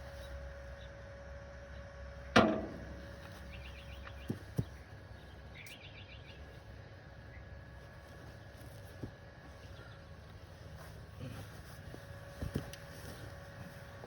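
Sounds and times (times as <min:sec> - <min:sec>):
metal clank ringing: 0:02.4 - 0:03.0
bird chirping: 0:03.2 - 0:04.4.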